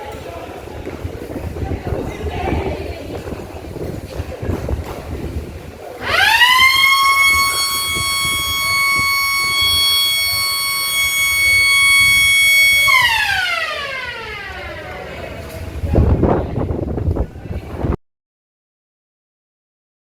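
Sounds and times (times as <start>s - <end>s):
siren winding high wail: 6.0s - 15.0s.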